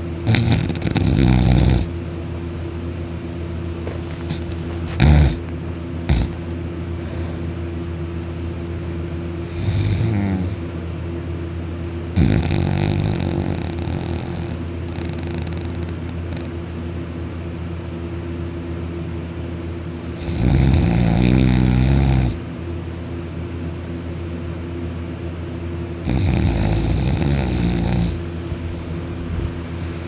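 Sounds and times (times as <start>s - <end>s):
steady low hum: 0.0s - 30.0s
heavy rattling snoring: 0.2s - 2.0s, 4.1s - 7.4s, 9.4s - 10.6s, 12.1s - 16.6s, 20.2s - 22.4s, 26.0s - 28.2s.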